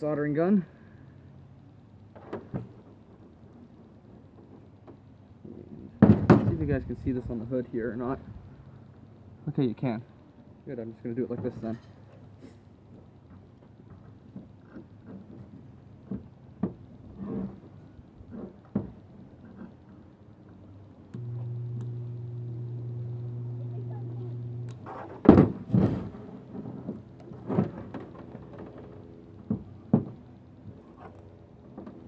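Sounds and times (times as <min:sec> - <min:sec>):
soldering gun buzzing: 0:21.1 - 0:24.8.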